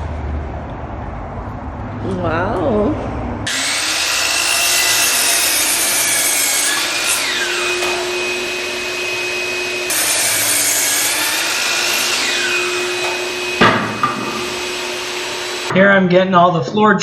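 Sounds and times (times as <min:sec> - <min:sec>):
power saw cutting lumber: 0:03.5 - 0:15.7.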